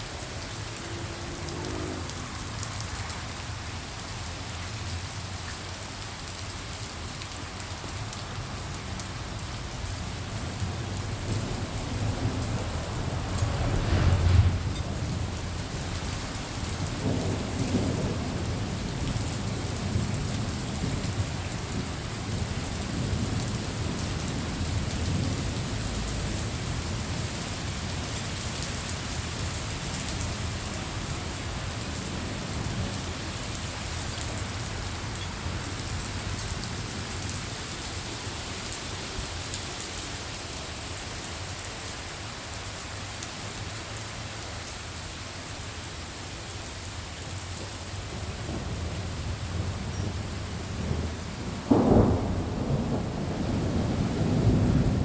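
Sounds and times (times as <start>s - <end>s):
steady rain: 0.0s - 55.0s
rolling thunder: 10.1s - 28.6s, 48.0s - 55.0s.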